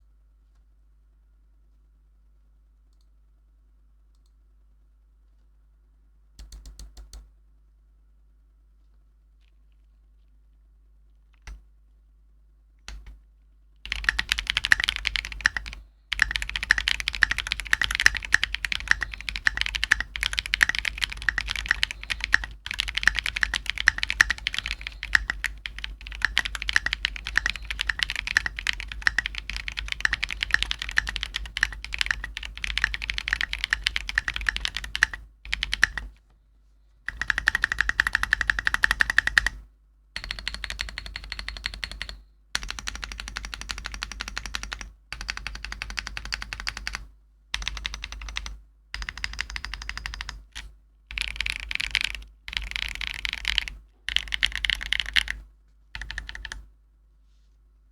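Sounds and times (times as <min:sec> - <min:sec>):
mechanical keyboard typing: 0:06.4 - 0:07.2, 0:13.9 - 0:36.1, 0:37.1 - 0:39.6, 0:40.2 - 0:55.4, 0:56.0 - 0:56.6.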